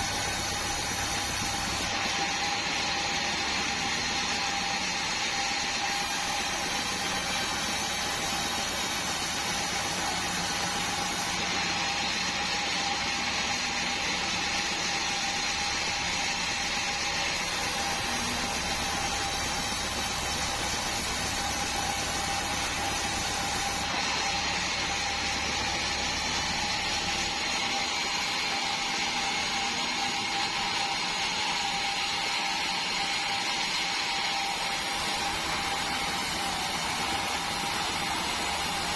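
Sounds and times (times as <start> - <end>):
band sawmill cutting log: 0.0 - 38.9.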